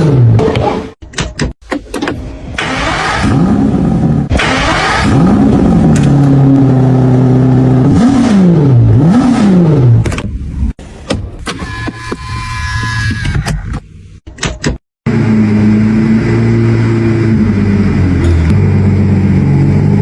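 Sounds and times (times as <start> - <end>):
car engine revving: 2.6 - 10.1.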